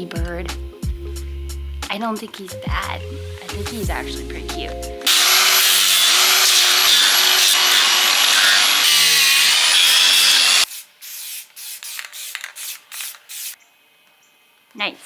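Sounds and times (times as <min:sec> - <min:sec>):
power tool sanding wood: 0:05.0 - 0:10.7.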